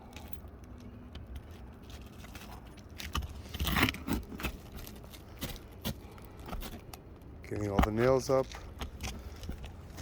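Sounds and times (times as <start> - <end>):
sharp metal clinks and scrapes: 1.4 - 5.6.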